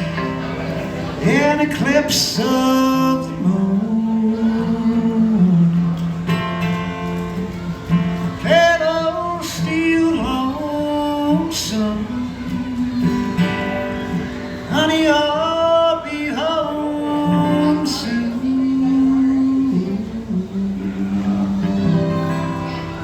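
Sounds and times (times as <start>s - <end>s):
acoustic guitar strumming: 0.0s - 23.0s
person singing: 8.2s - 13.8s, 14.7s - 22.8s.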